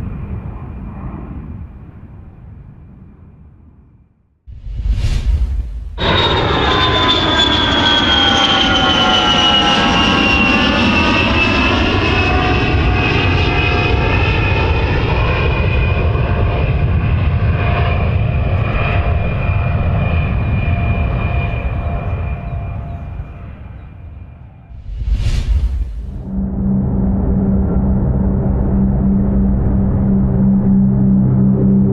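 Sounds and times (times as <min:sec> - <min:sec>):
aircraft engine roar: 0:00.0 - 0:03.8, 0:04.5 - 0:31.9
high engine whine: 0:05.4 - 0:14.2.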